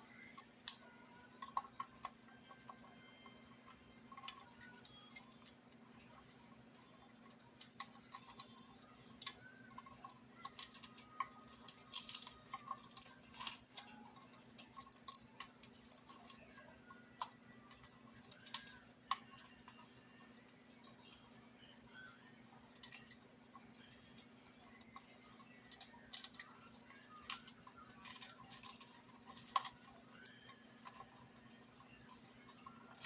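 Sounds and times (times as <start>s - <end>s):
low steady hum: 0.0s - 33.0s.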